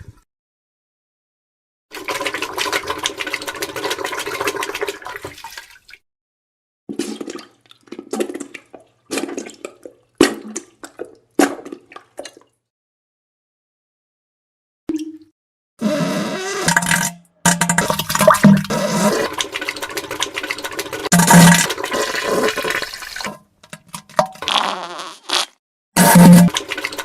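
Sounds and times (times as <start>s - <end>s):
wet sputtering fart sounds: 15.8s - 19.6s, 24.2s - 26.6s.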